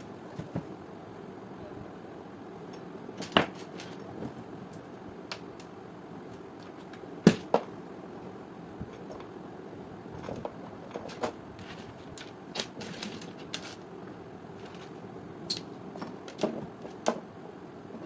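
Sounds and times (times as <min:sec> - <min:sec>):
clicks and knocks of small parts: 0:04.7 - 0:07.7, 0:10.2 - 0:13.9, 0:14.6 - 0:17.2.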